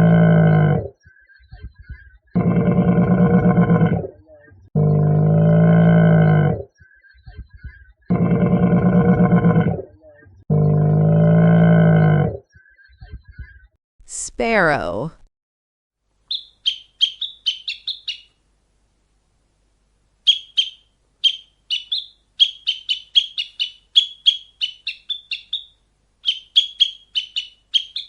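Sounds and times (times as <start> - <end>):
sparrow chirping: 16.3 - 18.4, 20.2 - 28.0.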